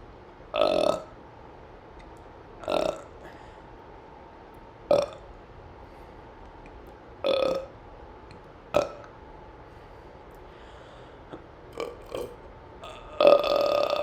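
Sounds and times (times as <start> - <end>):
person burping: 0.6 - 1.1, 2.6 - 3.2, 4.9 - 5.2, 7.3 - 7.7, 8.8 - 9.1, 11.8 - 14.0.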